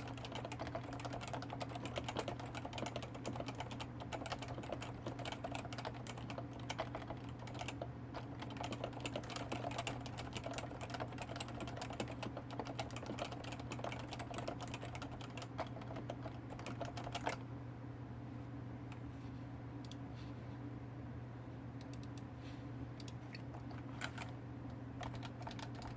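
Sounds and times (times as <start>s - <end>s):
fast keyboard typing: 0.0s - 17.4s, 25.0s - 25.9s.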